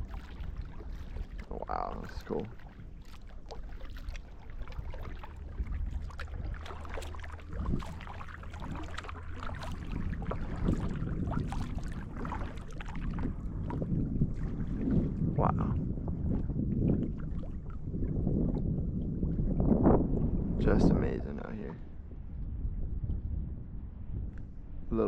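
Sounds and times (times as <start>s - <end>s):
small water splashes and drips: 0.0s - 18.7s
wind rumble on microphone: 0.0s - 25.0s.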